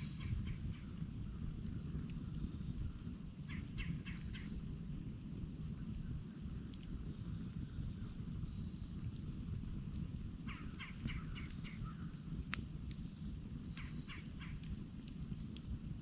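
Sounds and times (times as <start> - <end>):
campfire crackling: 0.0 - 16.0
fire popping: 0.0 - 16.0
bird calling: 10.5 - 12.1.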